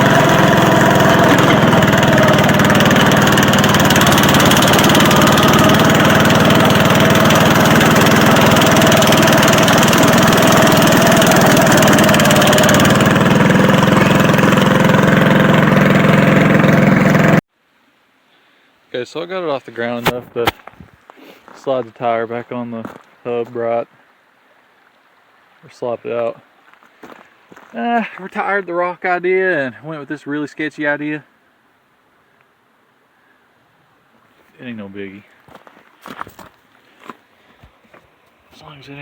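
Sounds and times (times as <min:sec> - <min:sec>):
tractor engine running loudly: 0:00.0 - 0:17.4.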